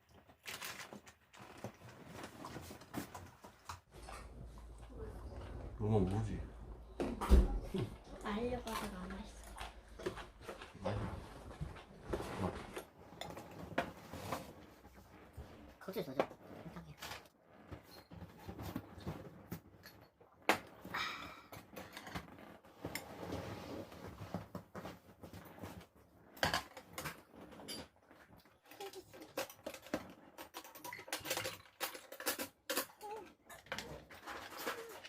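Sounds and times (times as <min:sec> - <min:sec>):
dishes and utensils clattering: 0:26.4 - 0:28.0, 0:28.7 - 0:35.0.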